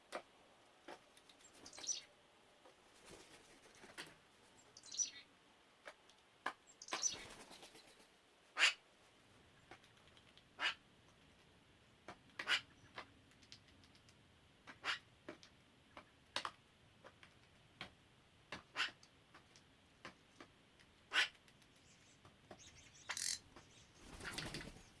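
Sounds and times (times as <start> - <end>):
birds chirping: 1.3 - 2.1, 4.5 - 5.3, 6.7 - 8.0, 21.1 - 25.0.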